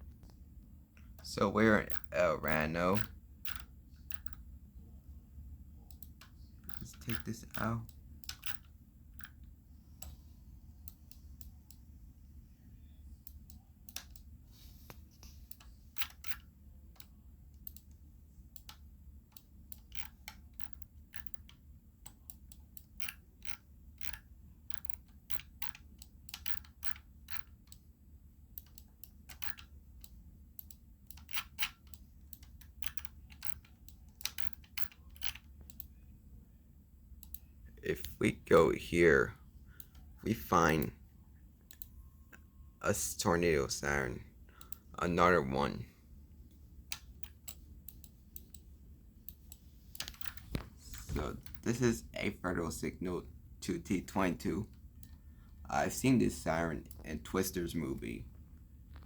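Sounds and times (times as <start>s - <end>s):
steady low hum: 0.0s - 59.0s
computer mouse clicking: 1.8s - 4.5s, 5.9s - 10.2s, 13.2s - 27.8s, 28.6s - 36.0s, 37.2s - 38.2s, 41.7s - 41.9s, 46.9s - 48.7s, 49.3s - 51.8s.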